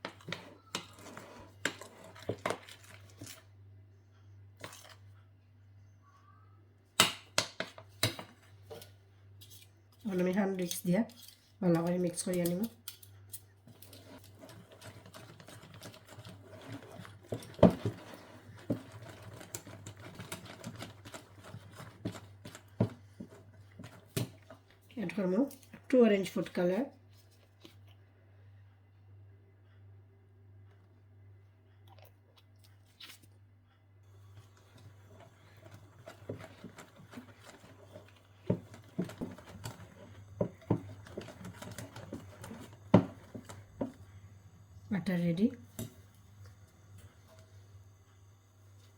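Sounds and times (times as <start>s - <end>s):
whisk mixing batter in bowl: 0.0s - 3.5s, 13.7s - 25.2s, 34.3s - 44.0s
whisk ticking against bowl: 34.8s - 44.0s.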